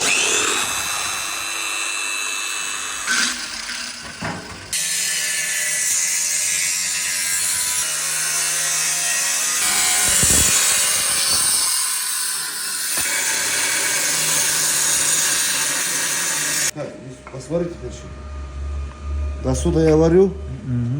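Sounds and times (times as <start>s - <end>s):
power tool on metal: 0.0s - 16.8s.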